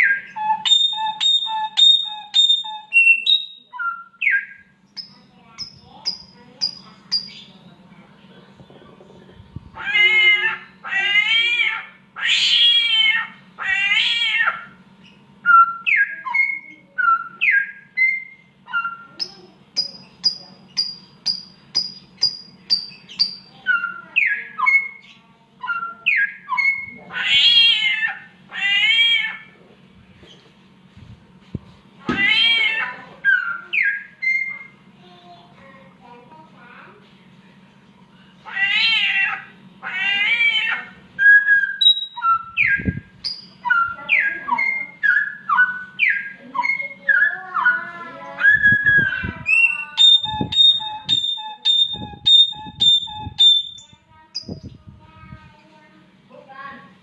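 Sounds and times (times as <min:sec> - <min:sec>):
high repeated bird notes: 0:00.0 - 0:07.5, 0:12.4 - 0:29.4, 0:38.7 - 0:54.8
bird meow-like calls: 0:09.8 - 0:14.8, 0:25.9 - 0:29.6, 0:32.1 - 0:34.7, 0:38.4 - 0:43.0.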